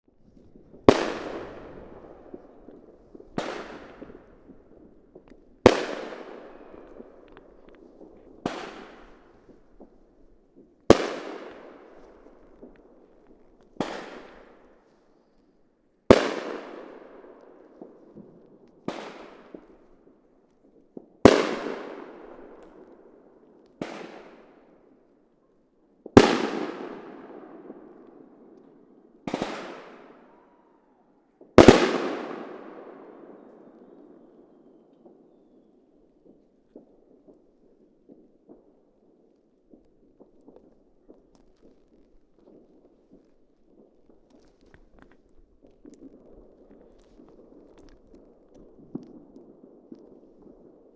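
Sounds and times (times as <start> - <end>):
fireworks bangs with echo: 0.5 - 10.0, 10.6 - 14.7, 16.1 - 19.8, 21.2 - 23.0, 26.1 - 35.6.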